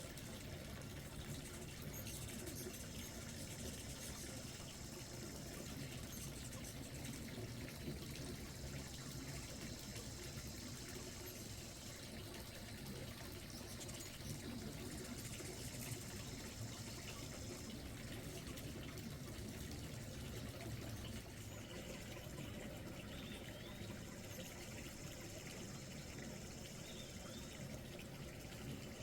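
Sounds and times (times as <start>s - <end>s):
trickling water: 0.0s - 29.0s
faint bird chirps: 21.4s - 25.0s, 25.6s - 27.7s.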